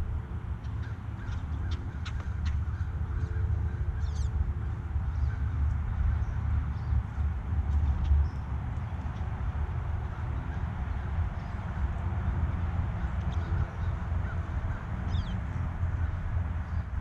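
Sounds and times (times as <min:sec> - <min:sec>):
low steady rumble: 0:00.0 - 0:17.0
birds chirping and twittering: 0:00.6 - 0:17.0.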